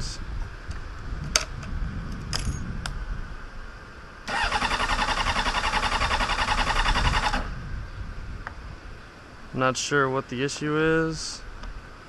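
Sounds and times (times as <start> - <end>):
motorcycle starter cranking: 4.3 - 7.5.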